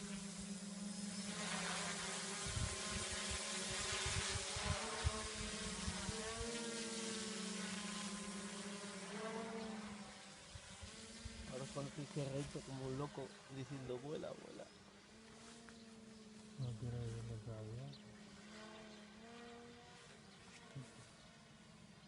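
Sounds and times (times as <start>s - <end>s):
drone motors buzzing: 0.0s - 22.0s.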